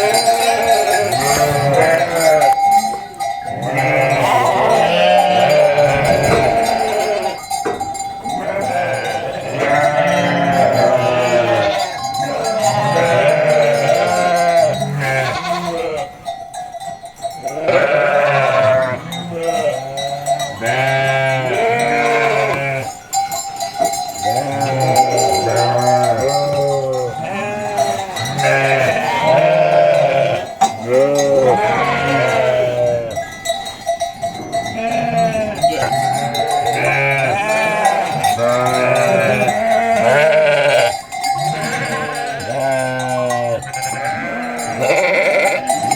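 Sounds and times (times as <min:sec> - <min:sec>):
bell ringing: 0:00.0 - 0:15.5, 0:19.2 - 0:27.2
sheep bleating: 0:00.0 - 0:16.2, 0:17.4 - 0:23.1, 0:24.2 - 0:33.4, 0:34.6 - 0:45.9.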